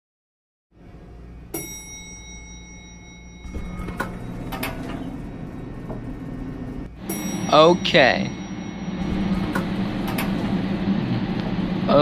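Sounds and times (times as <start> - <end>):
elevator doors sliding: 0.8 - 12.0
low hum: 0.8 - 12.0
elevator chime ding: 1.5 - 11.6
sharp clunks: 3.4 - 6.2, 7.0 - 10.8.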